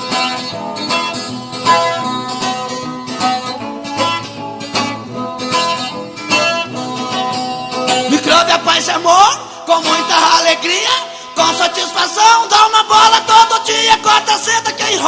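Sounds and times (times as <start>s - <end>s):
plucked guitar notes: 0.0s - 9.1s.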